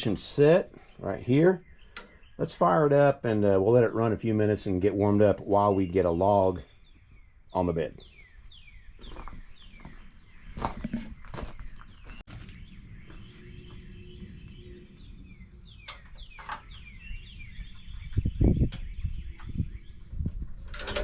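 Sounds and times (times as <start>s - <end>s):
small birds chirping: 0.0s - 21.0s
handling noises: 9.0s - 13.6s
footsteps: 9.0s - 13.9s.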